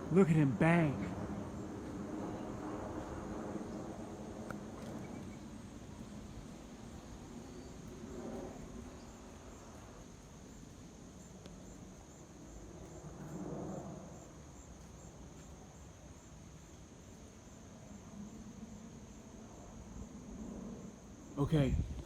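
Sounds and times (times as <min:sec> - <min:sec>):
crickets trilling: 0:00.0 - 0:22.0.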